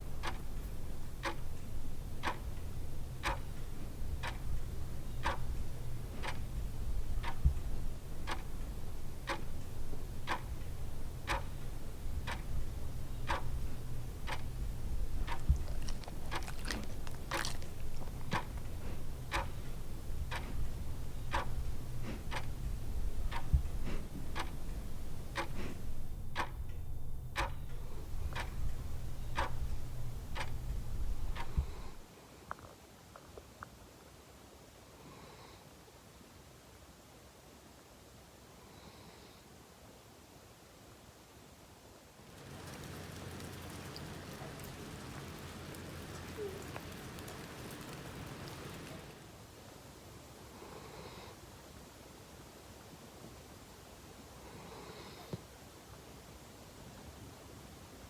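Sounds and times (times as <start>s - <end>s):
sharp tick: 0.0s - 32.0s.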